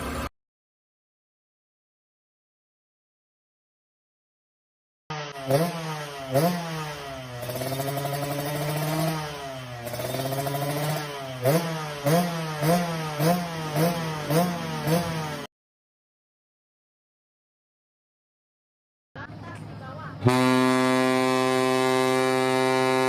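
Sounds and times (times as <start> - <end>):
motorcycle engine revving: 5.1 - 15.5, 19.9 - 23.0.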